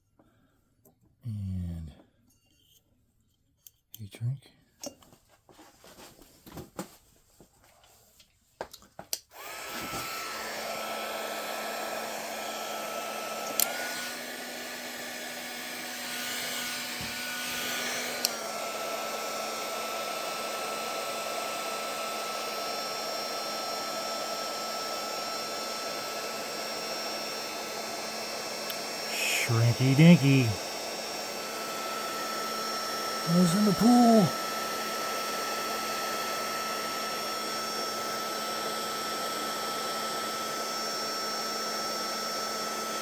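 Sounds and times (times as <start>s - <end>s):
heat gun fan blowing: 9.3s - 22.4s, 27.5s - 42.9s.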